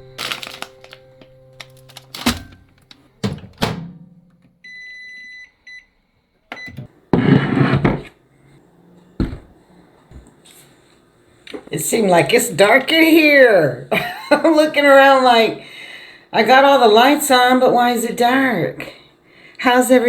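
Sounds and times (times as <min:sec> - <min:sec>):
rustling clatter: 0:00.0 - 0:04.5
handling knocks and clatter: 0:00.0 - 0:04.6
thunk: 0:03.2 - 0:04.5
microwave oven beep: 0:04.6 - 0:06.9.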